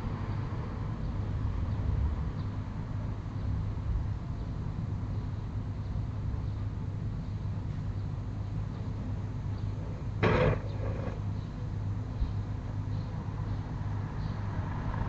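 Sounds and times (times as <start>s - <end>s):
steady low hum: 0.0s - 14.6s.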